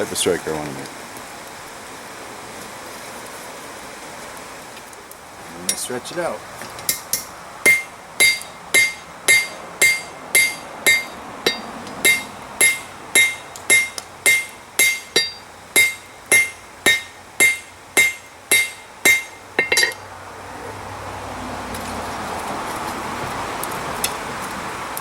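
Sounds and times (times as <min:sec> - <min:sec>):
hammer striking steel on anvil: 0:06.9 - 0:20.0.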